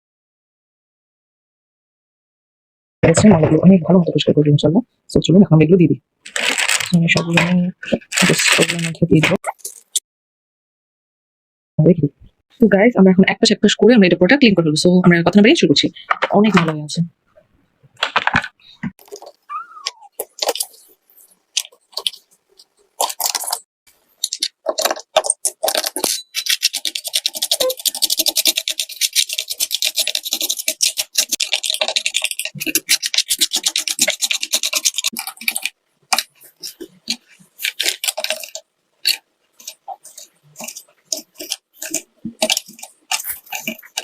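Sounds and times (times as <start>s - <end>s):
brush scrubbing keycaps: 20.1s - 44.0s.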